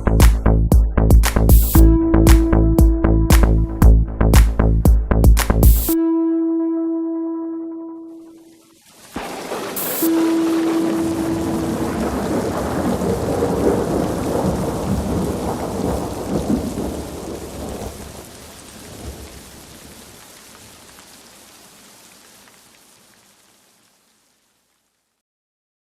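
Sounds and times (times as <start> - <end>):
rain: 8.2 - 25.2
rolling thunder: 9.2 - 20.0.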